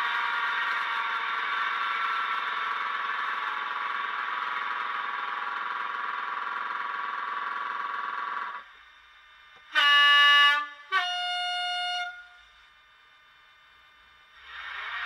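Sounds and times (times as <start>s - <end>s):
two-tone horn: 9.6s - 12.5s.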